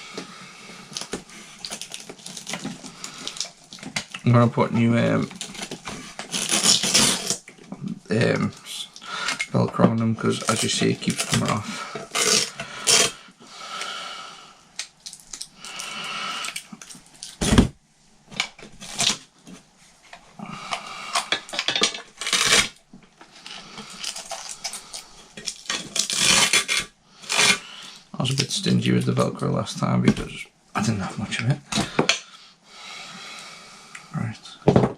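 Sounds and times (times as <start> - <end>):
velcro tearing: 6.3 - 7.4, 12.1 - 13.2, 22.2 - 22.8, 25.6 - 27.6.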